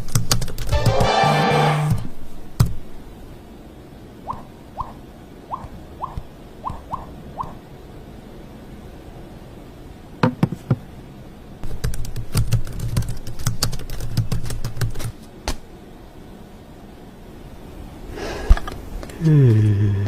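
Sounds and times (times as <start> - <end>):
rapid irregular clicks and taps: 0.0 - 0.8, 11.6 - 15.2.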